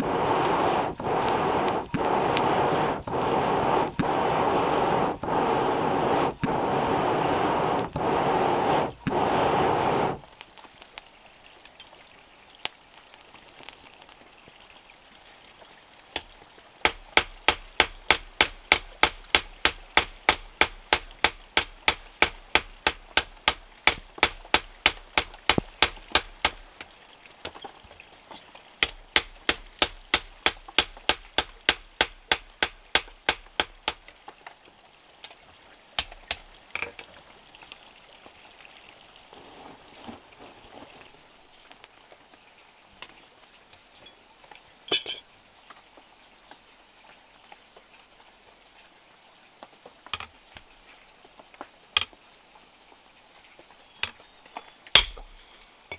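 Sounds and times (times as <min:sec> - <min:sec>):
hammer striking metal: 0:28.8 - 0:34.0, 0:55.0 - 0:55.3.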